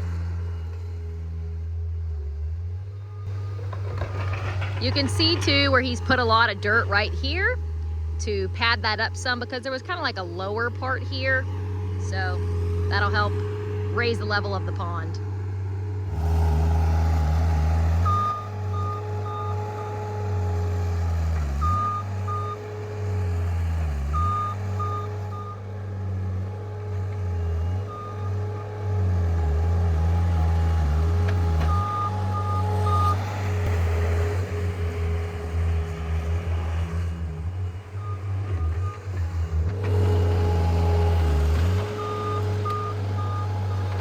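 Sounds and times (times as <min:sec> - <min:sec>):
diesel engine running under load: 0:00.0 - 0:44.0
backup alarm beeping: 0:04.8 - 0:07.6, 0:08.2 - 0:15.2.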